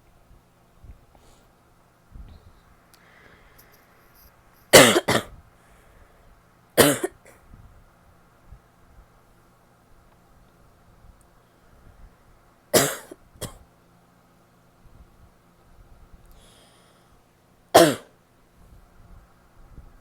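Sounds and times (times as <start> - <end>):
woman coughing: 4.7 - 5.4, 6.8 - 7.3, 12.8 - 13.6, 17.8 - 18.1.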